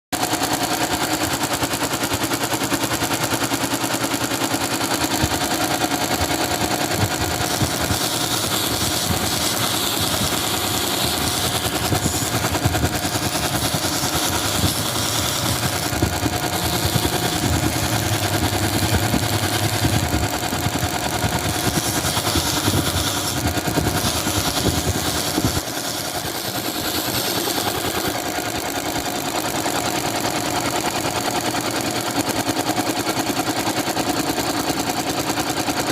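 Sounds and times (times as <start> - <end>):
belt grinder running: 0.2 - 35.9
wooden handle sanding rasp: 6.0 - 28.4.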